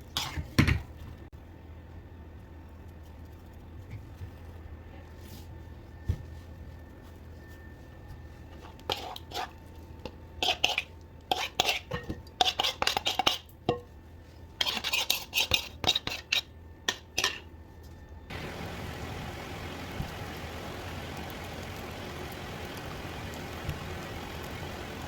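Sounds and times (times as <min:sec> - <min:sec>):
steady low hum: 0:13.4 - 0:25.0.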